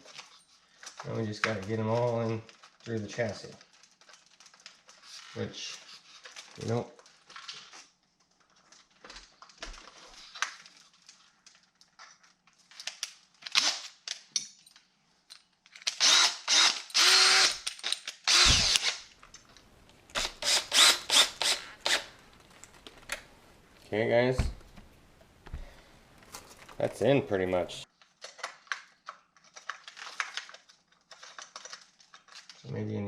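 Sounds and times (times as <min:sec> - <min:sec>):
faint clicks of parts handled: 0:00.0 - 0:15.9
power drill whining: 0:15.9 - 0:19.1, 0:20.1 - 0:22.4.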